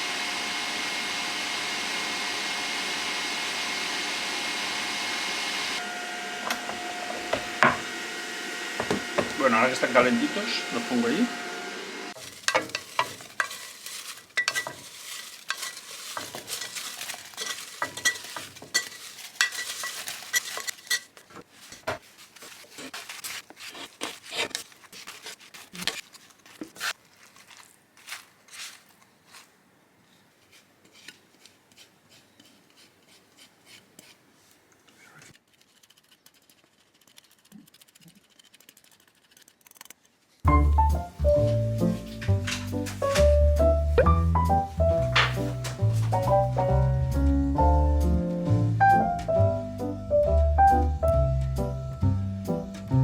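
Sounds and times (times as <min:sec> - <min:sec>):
food sizzling in a pan: 0:11.9 - 0:21.0
utensils and dishes clinking: 0:12.2 - 0:21.2.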